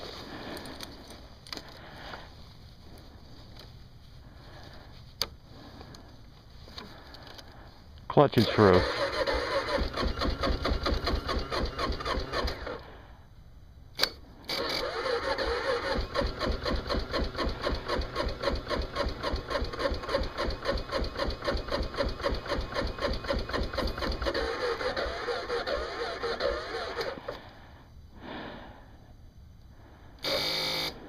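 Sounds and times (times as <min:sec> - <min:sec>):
motorcycle engine cranking: 0:08.5 - 0:12.8, 0:14.0 - 0:27.4.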